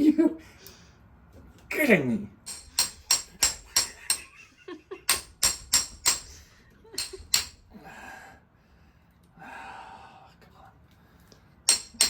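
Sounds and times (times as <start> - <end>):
hammer striking metal: 2.4 - 4.4, 5.1 - 6.4, 7.0 - 7.7, 11.7 - 12.0.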